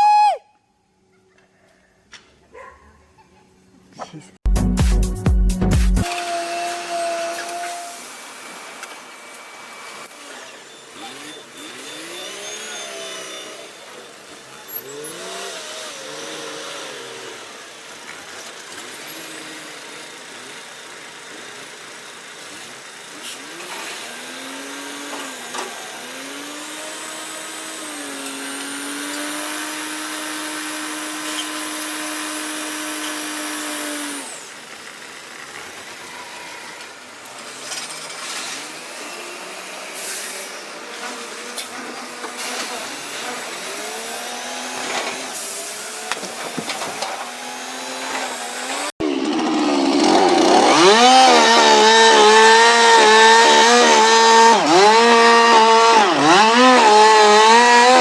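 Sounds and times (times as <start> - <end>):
machine engine revving: 10.0 - 17.9, 22.6 - 58.0.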